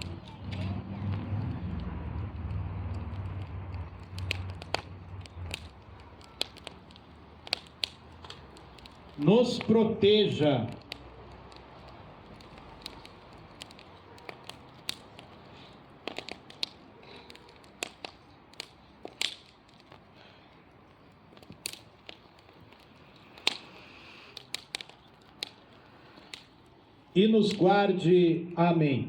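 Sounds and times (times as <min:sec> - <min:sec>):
bonfire crackling and popping: 0:00.0 - 0:27.9
faint fire hiss: 0:00.0 - 0:27.9.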